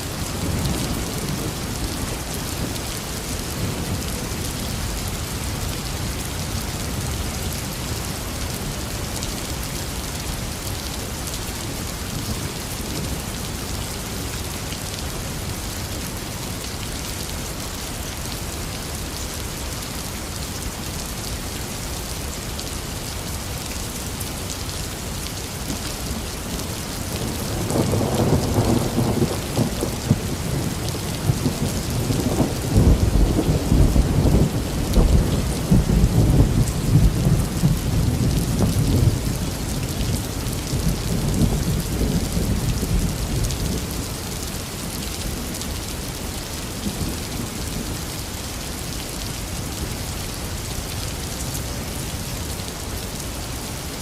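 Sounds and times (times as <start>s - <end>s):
heavy rain: 0.0s - 54.0s
thunder rumbling: 27.6s - 39.3s.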